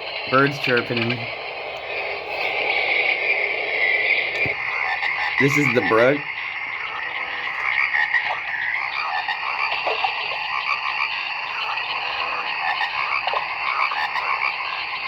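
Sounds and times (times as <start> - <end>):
recorded running water: 0.0 - 15.0
short calls: 0.0 - 15.0.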